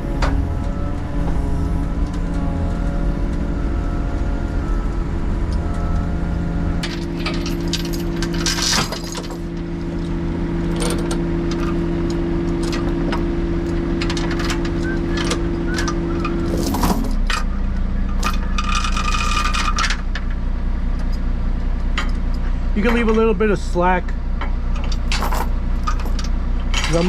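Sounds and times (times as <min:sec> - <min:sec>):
engine idling: 0:00.0 - 0:27.0
metallic clinks and rattles: 0:06.8 - 0:09.6, 0:14.0 - 0:17.5, 0:18.1 - 0:20.0, 0:24.8 - 0:27.0.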